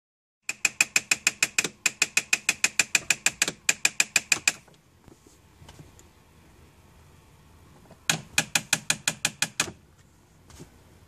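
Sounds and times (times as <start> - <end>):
rapid regular clicking: 0.4 - 4.7, 8.1 - 9.8.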